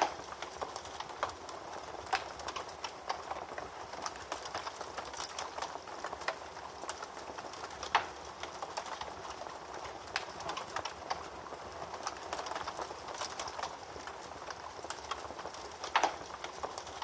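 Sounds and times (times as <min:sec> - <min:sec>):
wood fire crackling and popping: 0:00.0 - 0:17.0.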